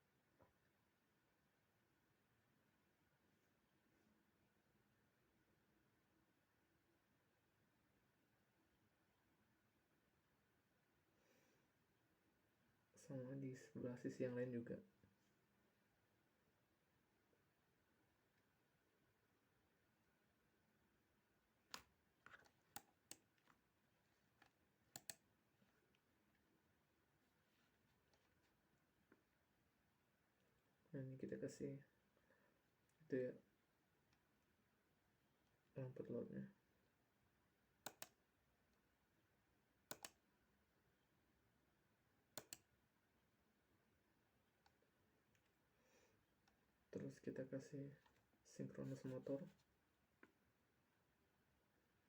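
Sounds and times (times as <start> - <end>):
computer mouse clicks: 21.7 - 23.6, 24.4 - 25.3, 37.8 - 38.2, 39.9 - 40.2, 42.3 - 42.7
computer mouse double-clicks: 25.0 - 25.2, 37.8 - 38.2, 39.9 - 40.2, 42.4 - 42.6.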